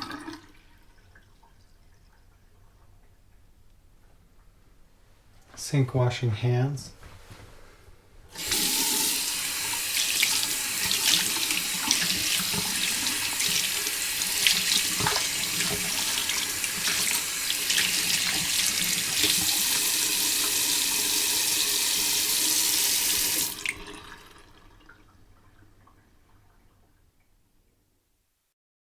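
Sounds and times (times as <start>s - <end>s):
hands washing under water: 8.3s - 24.2s
water splashes: 8.4s - 20.6s
tap running into a sink: 8.4s - 24.2s.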